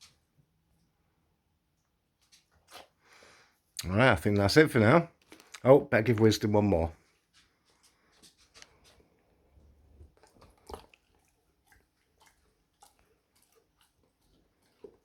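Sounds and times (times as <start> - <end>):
dog chewing: 2.2 - 3.2, 7.1 - 15.0.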